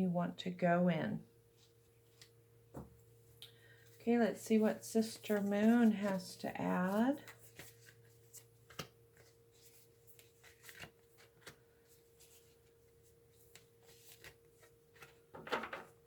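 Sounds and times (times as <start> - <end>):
faint steady hum: 0.0 - 16.0
cards being shuffled: 5.0 - 15.9.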